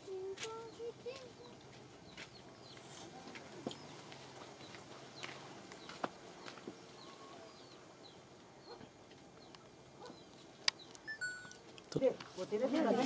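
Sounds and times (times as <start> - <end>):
high bird chirps: 10.7 - 11.6.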